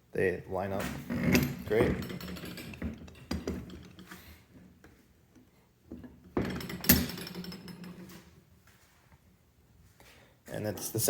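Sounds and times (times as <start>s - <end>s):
metal parts knocking on table: 1.3s - 4.2s, 5.9s - 8.2s.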